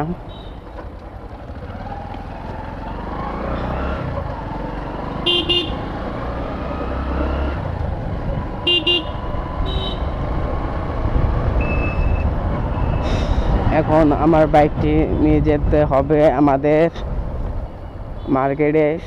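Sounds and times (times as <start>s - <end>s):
motorcycle engine and road rumble: 0.0s - 19.0s
vehicle horns tooting: 0.3s - 0.8s, 5.2s - 5.9s, 8.6s - 10.2s.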